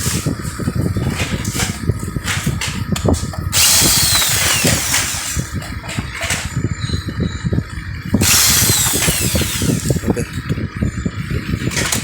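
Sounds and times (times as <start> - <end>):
drill-driver backing out screw: 3.6 - 5.5, 8.2 - 10.1.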